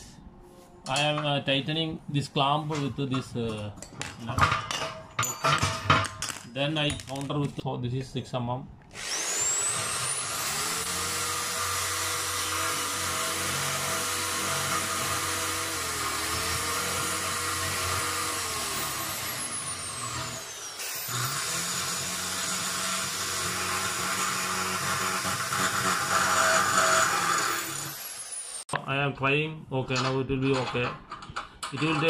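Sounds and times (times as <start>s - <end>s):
electric drill boring through steel: 8.9s - 28.7s.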